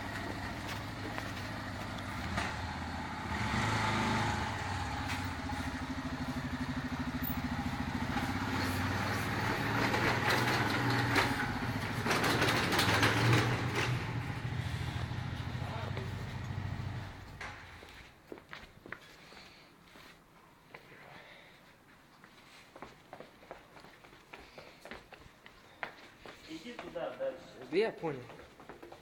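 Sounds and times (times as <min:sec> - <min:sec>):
motorcycle engine running: 0:00.0 - 0:17.6.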